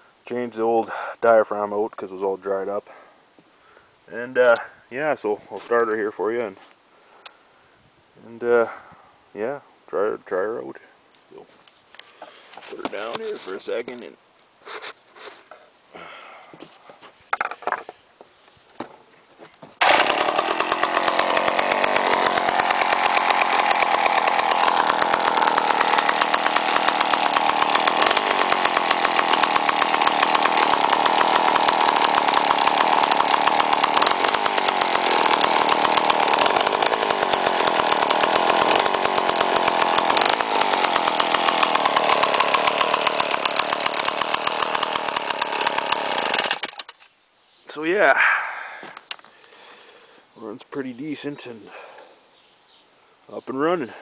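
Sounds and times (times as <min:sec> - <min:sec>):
two-stroke chainsaw engine running: 0:19.8 - 0:46.9.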